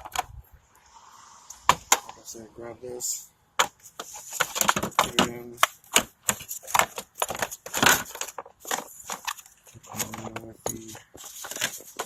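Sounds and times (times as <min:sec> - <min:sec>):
car parts clicking and knocking: 0:00.0 - 0:00.3, 0:03.6 - 0:12.0.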